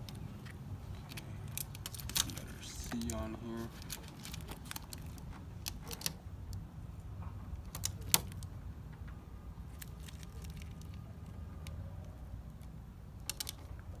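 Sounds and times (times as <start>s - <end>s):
plastic clicks and ticks: 13.2s - 13.8s.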